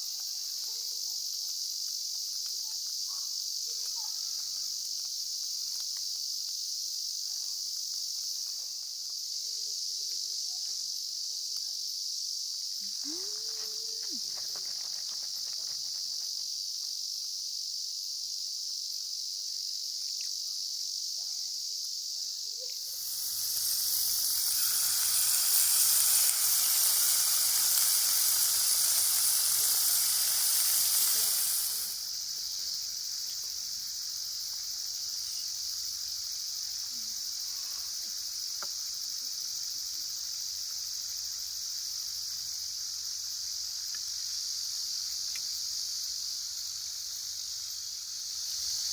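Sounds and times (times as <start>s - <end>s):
crickets chirping: 0.0s - 48.9s
loud even hiss: 22.8s - 33.5s.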